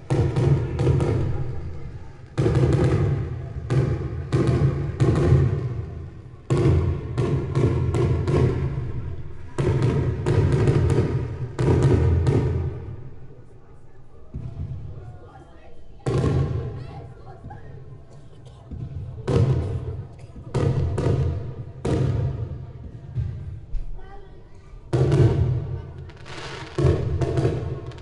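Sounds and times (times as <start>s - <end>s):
fireworks exploding: 0.0s - 13.3s, 16.0s - 16.7s, 19.3s - 22.5s, 24.9s - 28.0s.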